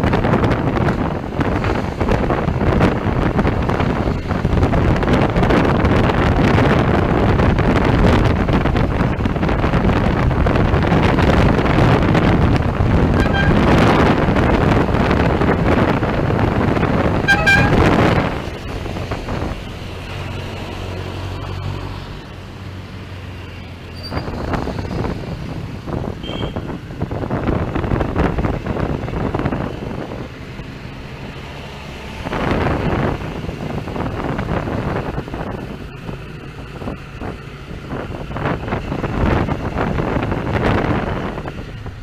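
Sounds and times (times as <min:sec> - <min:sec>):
loud rush of noise: 0:00.0 - 0:23.4
road traffic engines: 0:00.0 - 0:42.0
car horn toot: 0:13.1 - 0:13.9, 0:17.2 - 0:18.2, 0:26.2 - 0:26.7.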